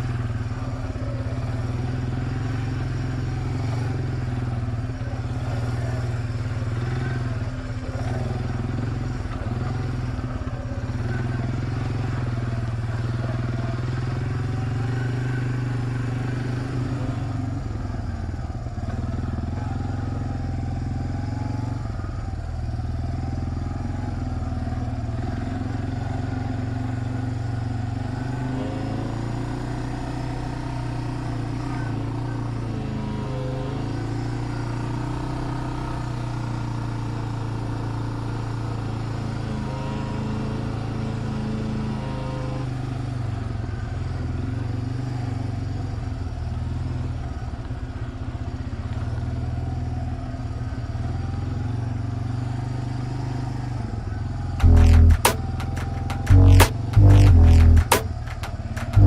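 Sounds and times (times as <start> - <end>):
atv engine running: 0.0 - 42.0, 54.1 - 59.0.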